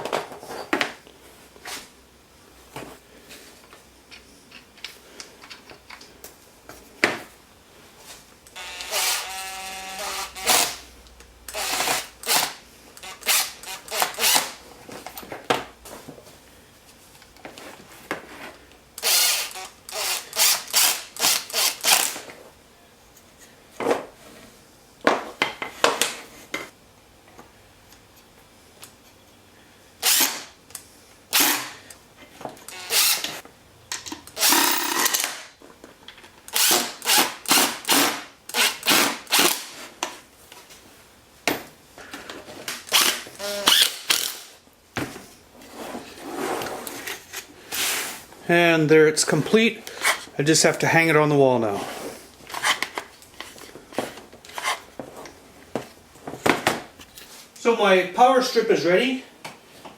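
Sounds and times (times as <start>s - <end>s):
power drill driving screws: 8.6s - 10.9s, 11.5s - 14.6s, 19.0s - 22.2s, 30.0s - 30.5s, 31.3s - 31.8s, 32.7s - 33.4s, 34.3s - 35.5s, 36.5s - 39.7s, 42.8s - 44.6s.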